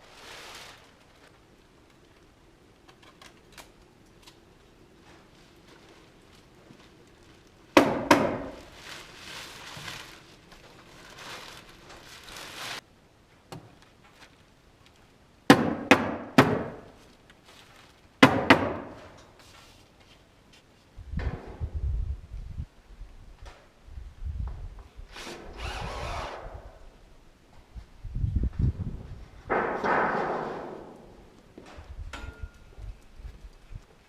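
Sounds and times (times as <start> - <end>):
hammering nails into wood: 7.8 - 8.6, 15.5 - 16.9, 18.2 - 19.1
boards scraping and rustling: 29.4 - 31.8.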